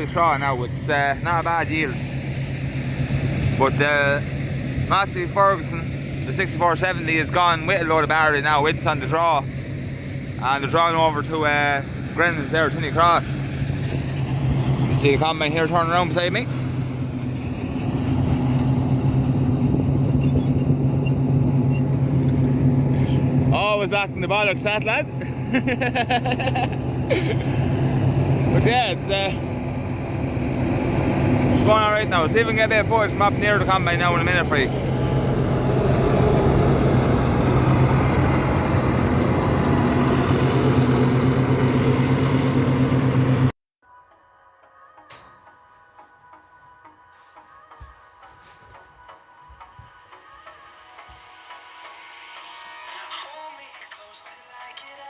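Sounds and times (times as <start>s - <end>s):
combine harvester engine droning: 0.0s - 43.5s.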